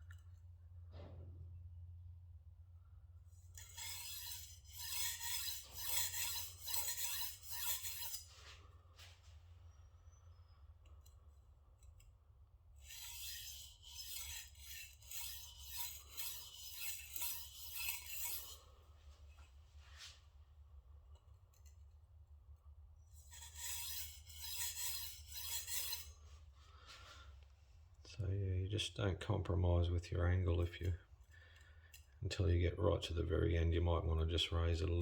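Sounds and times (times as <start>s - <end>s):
knife scraping on whetstone: 3.5s - 8.7s, 12.8s - 18.7s, 23.1s - 27.0s.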